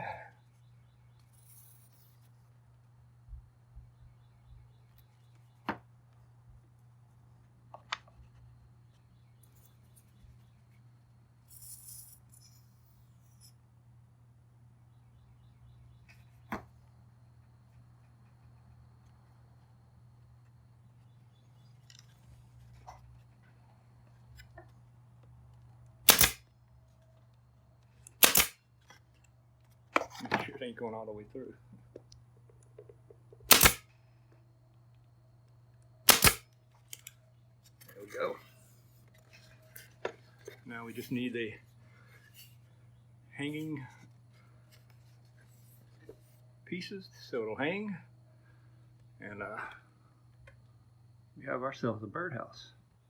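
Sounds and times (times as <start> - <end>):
pin nailer shots: 26.0 - 26.4, 28.1 - 28.6, 33.4 - 33.9, 36.0 - 37.1.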